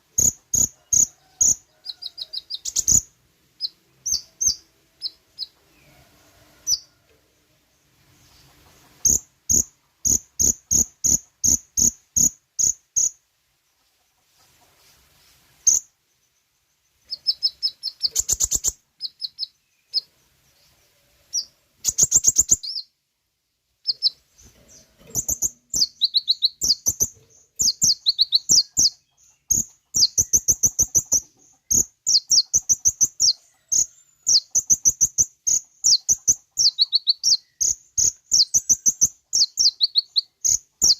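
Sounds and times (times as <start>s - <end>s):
bird chirps and trills: 0.0s - 5.9s, 8.2s - 13.2s, 15.6s - 23.0s, 23.8s - 40.9s.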